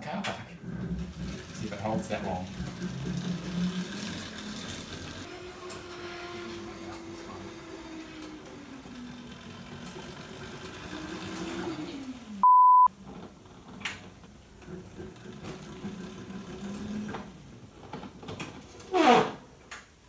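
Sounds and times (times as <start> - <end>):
electric motor whine: 2.6 - 12.4
censor bleep: 12.4 - 12.9.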